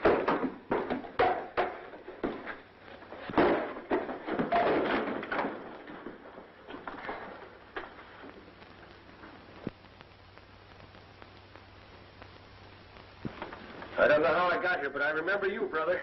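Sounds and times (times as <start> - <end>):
knocks and thuds: 0.0 - 8.0.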